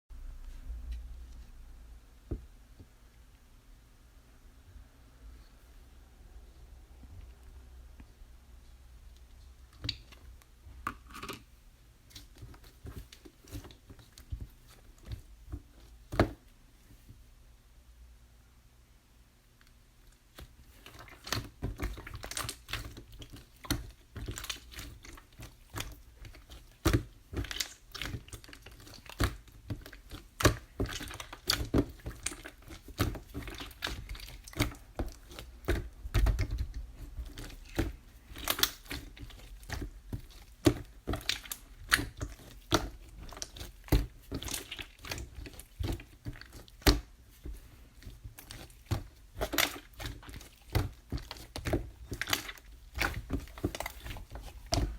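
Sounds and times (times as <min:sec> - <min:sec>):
slime squished by hand: 0:20.3 - 0:54.9.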